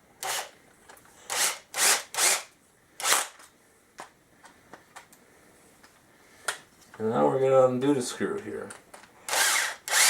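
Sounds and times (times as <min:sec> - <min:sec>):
cordless drill driving a screw: 0:00.2 - 0:00.5, 0:01.3 - 0:03.3, 0:09.3 - 0:10.0.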